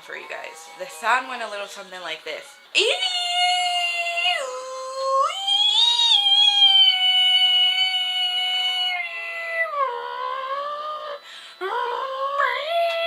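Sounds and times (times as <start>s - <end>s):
woman wailing vocal imitation: 2.9s - 11.1s.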